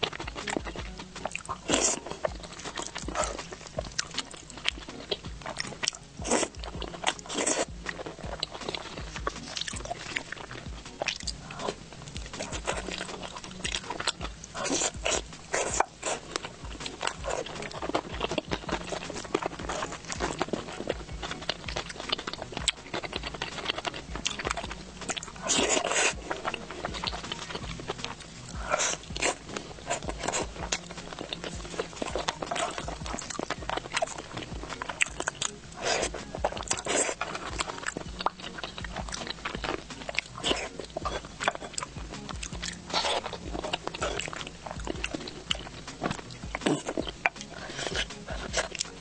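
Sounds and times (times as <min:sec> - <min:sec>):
wet chewing and gnawing: 0:00.0 - 0:49.0.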